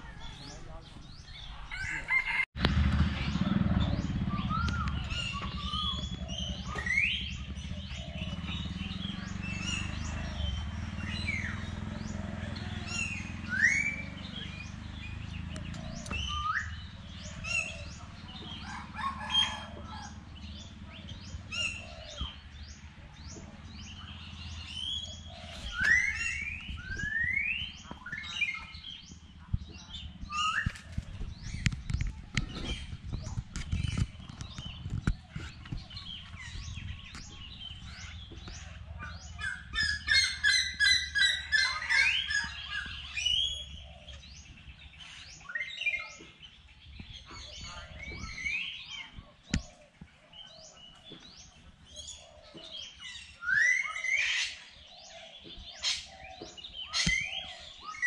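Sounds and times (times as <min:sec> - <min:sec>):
birds chirping: 0:00.0 - 0:58.0
steady low rumble: 0:02.5 - 0:13.5, 0:19.7 - 0:40.1.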